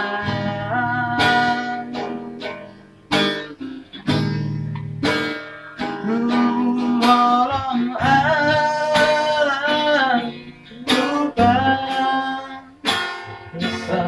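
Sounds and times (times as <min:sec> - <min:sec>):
person singing long notes: 0:00.0 - 0:02.3, 0:06.0 - 0:14.0
acoustic guitar strummed: 0:00.0 - 0:14.0.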